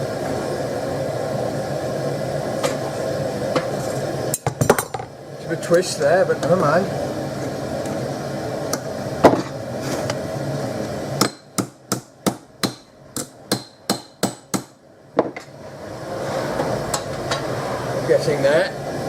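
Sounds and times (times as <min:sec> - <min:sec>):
gas forge burner roaring: 0:00.0 - 0:19.0
hammer ringing on hot steel: 0:11.2 - 0:14.8.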